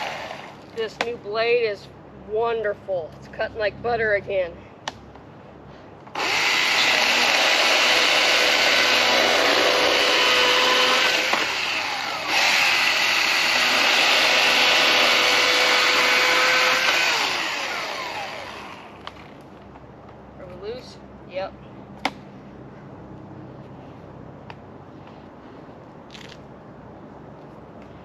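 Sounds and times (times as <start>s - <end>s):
chainsaw cutting through log: 0.0s - 0.6s, 6.1s - 19.0s.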